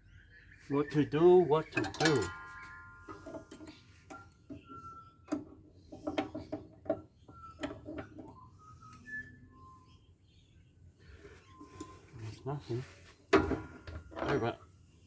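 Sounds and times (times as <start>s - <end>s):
hand tools knocking on metal: 1.7s - 8.3s
high single-pitch tones: 2.1s - 5.3s.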